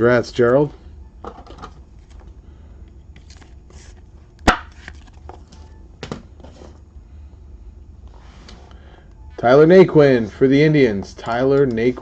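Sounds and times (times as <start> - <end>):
low steady hum: 0.0 - 12.0
trading cards rustling: 3.2 - 4.1, 4.7 - 5.7.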